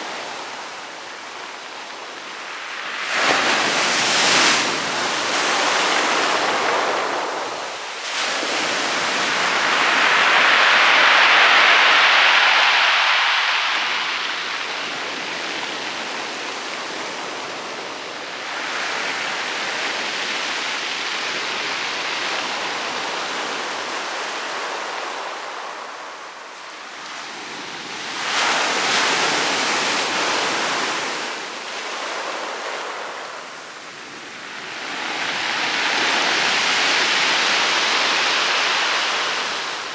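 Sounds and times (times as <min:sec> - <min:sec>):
waves breaking on pebble beach: 0:01.4 - 0:17.8, 0:34.0 - 0:39.9.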